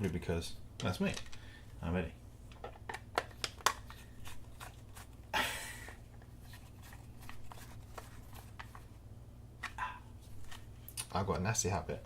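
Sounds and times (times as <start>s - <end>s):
plastic parts clicking: 0.8s - 1.4s.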